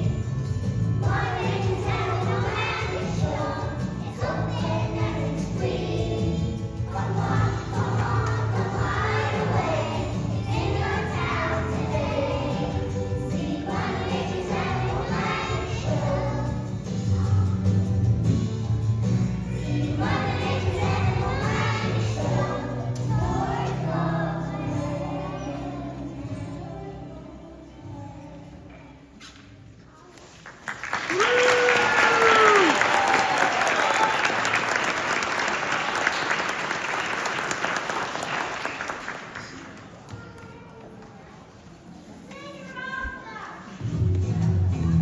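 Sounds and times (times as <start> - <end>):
low musical accompaniment: 0.0 - 29.2, 43.8 - 45.0
choir singing: 1.0 - 17.5, 19.4 - 28.4.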